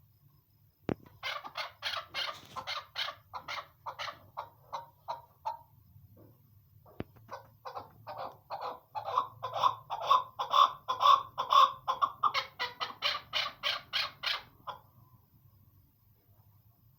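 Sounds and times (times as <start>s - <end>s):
partridge clucking calls: 0.9s - 5.7s, 6.9s - 14.9s.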